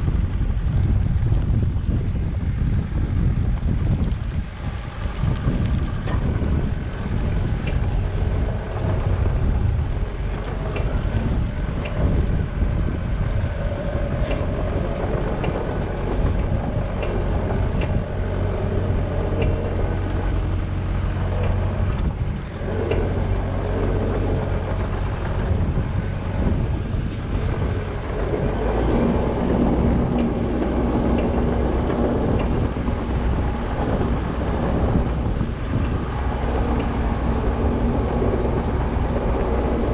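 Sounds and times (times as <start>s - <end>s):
backhoe diesel engine running: 3.7s - 39.9s.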